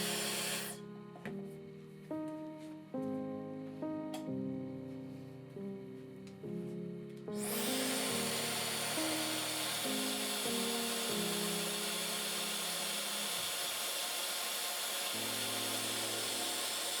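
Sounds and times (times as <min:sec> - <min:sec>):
hair dryer blowing air: 0:00.0 - 0:00.8, 0:07.4 - 0:17.0
background music with slow chords: 0:00.0 - 0:13.6, 0:15.1 - 0:17.0.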